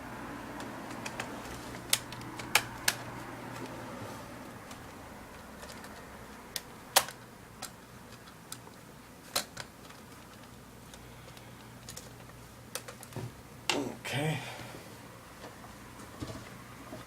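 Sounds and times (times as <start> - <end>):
plastic parts clicking: 0.6 - 3.7, 4.6 - 13.2.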